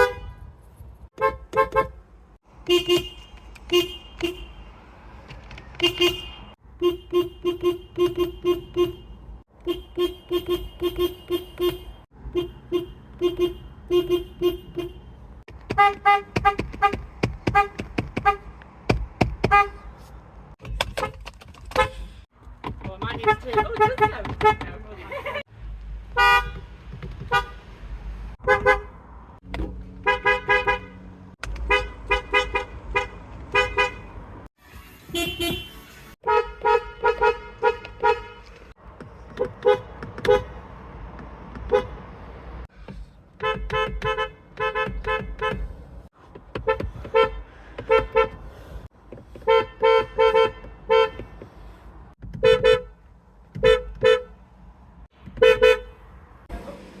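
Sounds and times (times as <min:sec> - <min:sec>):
car horn short blasts: 0:00.0 - 0:00.5, 0:01.1 - 0:02.0, 0:02.6 - 0:04.6, 0:05.8 - 0:15.1, 0:19.4 - 0:19.9, 0:26.2 - 0:26.6, 0:30.0 - 0:31.0, 0:31.7 - 0:38.5, 0:43.4 - 0:45.6, 0:46.6 - 0:48.4, 0:49.4 - 0:51.4, 0:52.4 - 0:53.0, 0:53.6 - 0:54.4, 0:55.4 - 0:56.0.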